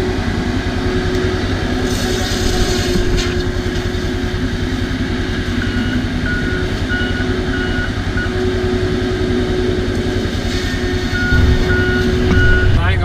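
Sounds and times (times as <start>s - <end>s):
bulldozer diesel engine running: 0.0s - 13.0s
backup alarm beeping: 5.6s - 8.4s, 11.0s - 13.0s.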